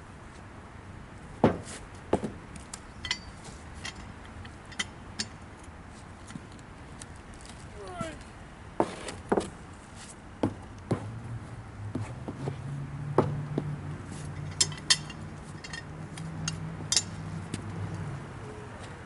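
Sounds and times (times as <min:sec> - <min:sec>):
metal clinks and knocks: 0:03.0 - 0:05.4, 0:14.3 - 0:17.3
low engine hum: 0:09.5 - 0:19.0.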